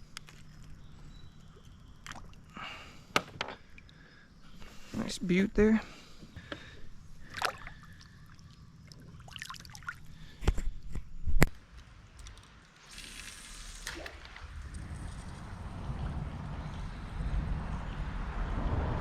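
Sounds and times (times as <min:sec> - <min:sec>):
water sloshing around kayak: 0:07.1 - 0:10.4
hissing splash: 0:12.8 - 0:15.3.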